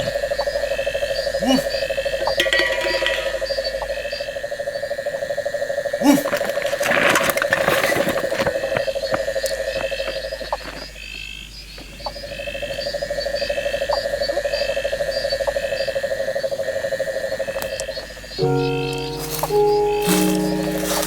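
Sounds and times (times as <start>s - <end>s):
insect fast pulsing trill: 0.0s - 6.8s, 12.1s - 21.0s
frogs trilling: 0.0s - 21.0s.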